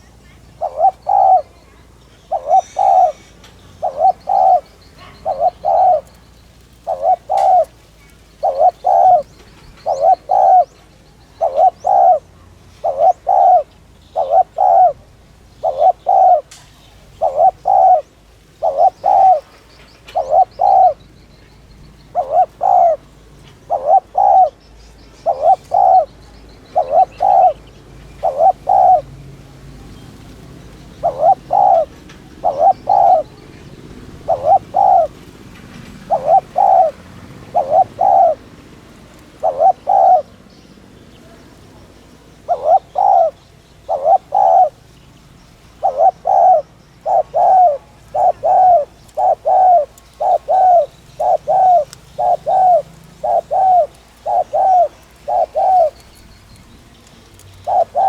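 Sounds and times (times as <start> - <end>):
dove cooing: 0.0 - 58.0
small birds chirping: 0.0 - 58.0.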